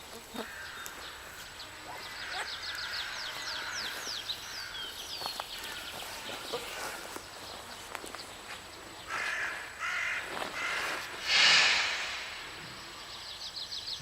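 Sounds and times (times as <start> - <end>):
bird rasping hissing call: 0.0 - 4.8, 9.1 - 13.5
bird harsh cawing calls: 0.2 - 7.1, 9.0 - 13.1.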